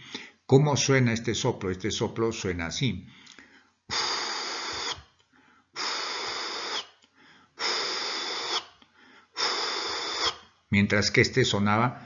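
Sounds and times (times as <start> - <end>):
man making breathy hisses: 3.2 - 10.5.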